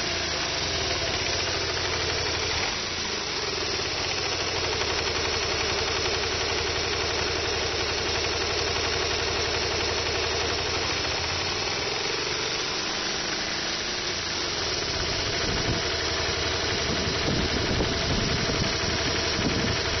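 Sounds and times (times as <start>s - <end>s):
motorcycle engine idling: 0.0s - 20.0s.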